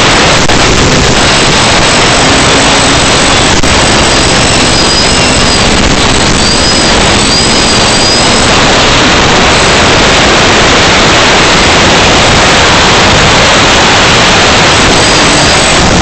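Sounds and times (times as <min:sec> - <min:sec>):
drone propeller and wind noise: 0:00.0 - 0:16.0.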